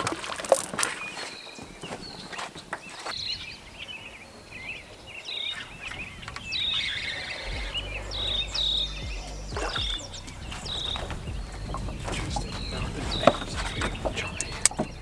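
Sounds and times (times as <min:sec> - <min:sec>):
birds chirping: 0:00.0 - 0:15.0
low rumble: 0:06.0 - 0:15.0.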